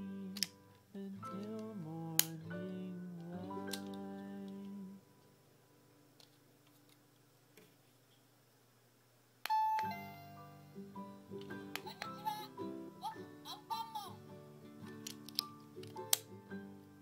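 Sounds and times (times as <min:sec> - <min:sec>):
melody: 0:09.5 - 0:11.0
musical tones: 0:09.5 - 0:14.8.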